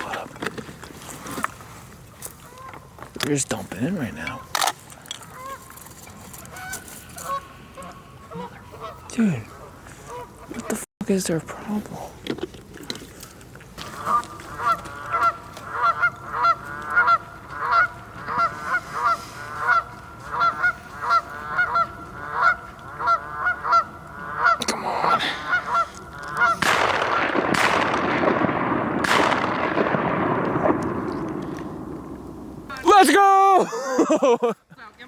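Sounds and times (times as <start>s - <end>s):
geese honking: 5.2s - 5.7s, 6.4s - 10.8s, 13.8s - 24.7s, 25.4s - 27.4s.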